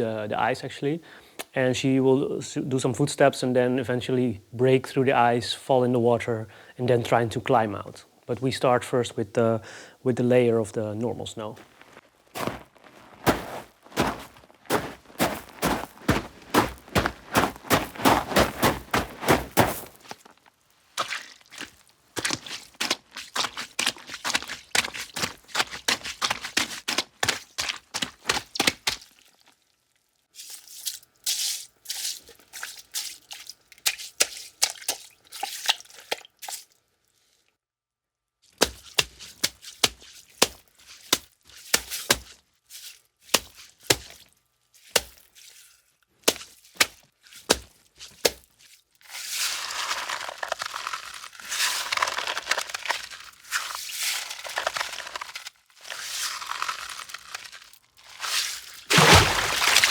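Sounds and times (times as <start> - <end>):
dense crackling and crunching: 11.4 - 25.2, 49.6 - 59.9
footsteps crunching in snow: 11.4 - 29.0, 49.2 - 59.9
cracking ice footsteps: 11.4 - 29.3, 38.5 - 45.6, 46.2 - 48.6, 49.4 - 59.9.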